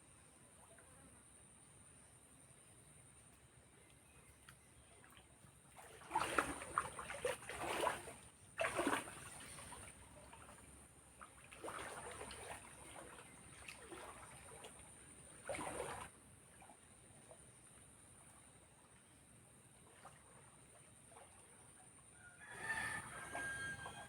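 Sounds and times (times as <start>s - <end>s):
water splashing and dribbling: 4.9s - 24.0s.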